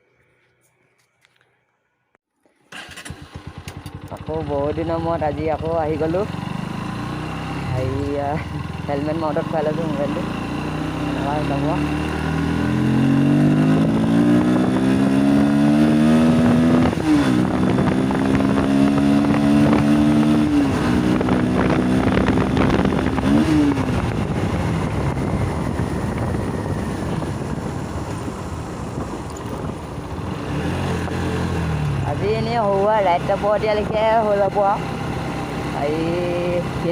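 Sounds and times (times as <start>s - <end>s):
motorcycle engine accelerating: 2.7s - 36.9s
wind rushing: 12.5s - 31.8s.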